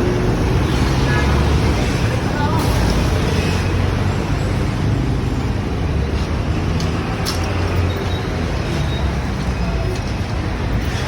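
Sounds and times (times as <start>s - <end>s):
low traffic rumble: 0.0s - 11.0s.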